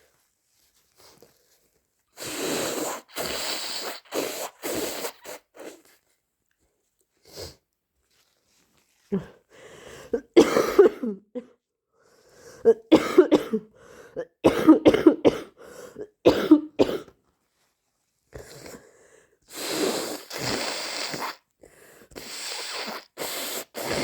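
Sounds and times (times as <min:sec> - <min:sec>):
person blowing nose: 0:02.1 - 0:06.0, 0:19.5 - 0:21.5, 0:22.1 - 0:24.0
person coughing: 0:10.2 - 0:11.5, 0:12.7 - 0:17.2.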